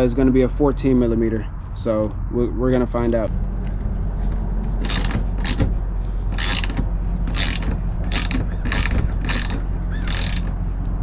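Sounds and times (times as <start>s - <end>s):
steady low hum: 0.0s - 11.0s
hand ratchet clicking: 4.8s - 5.7s, 6.3s - 10.6s.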